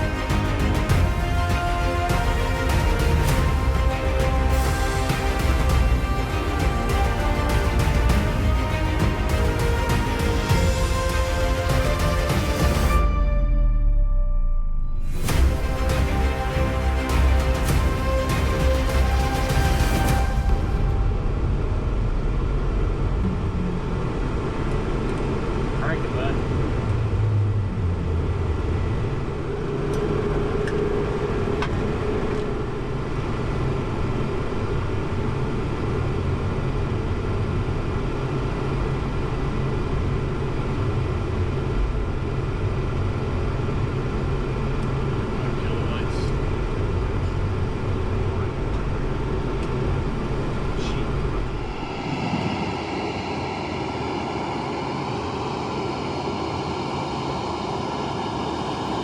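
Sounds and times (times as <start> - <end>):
jet aircraft noise: 15.2 - 59.0.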